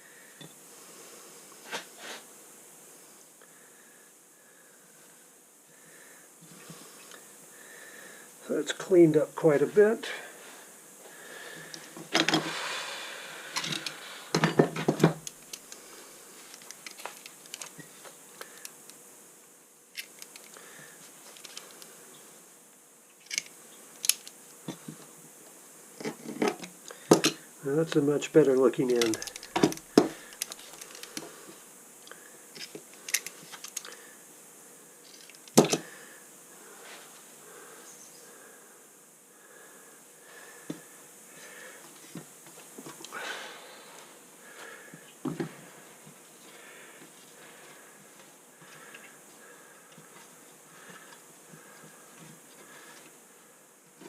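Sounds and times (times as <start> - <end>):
rustling and small clicks: 13.5 - 19.0, 19.9 - 22.0, 23.1 - 24.4, 28.8 - 34.0, 35.0 - 35.9
soft handling noise: 26.0 - 31.6.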